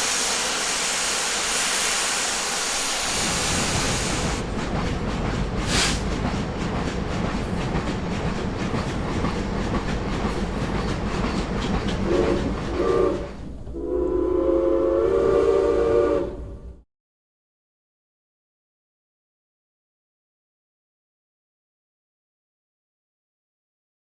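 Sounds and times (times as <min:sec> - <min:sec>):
train rumble and wheel clatter: 0:00.0 - 0:16.8
train horn blasts: 0:12.1 - 0:16.8.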